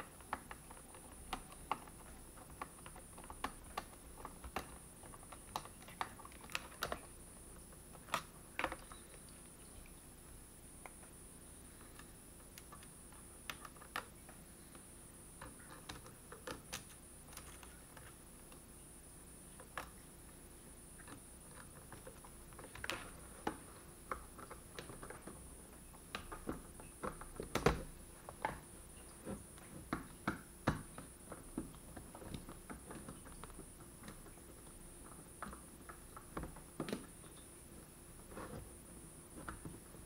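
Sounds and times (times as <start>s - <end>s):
small parts clicking and tapping: 0.0s - 9.6s, 10.8s - 18.7s, 19.6s - 20.0s, 21.0s - 37.5s.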